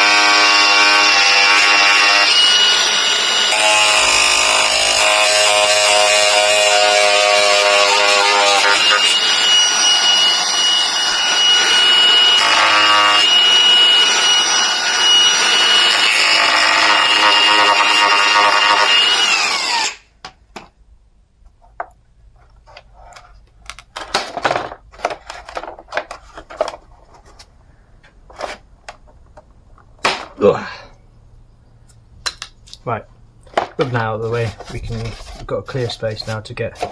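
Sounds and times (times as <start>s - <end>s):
angle grinder whining: 0.0s - 20.1s
knocks and clatter of handling: 21.4s - 30.4s, 33.4s - 35.5s.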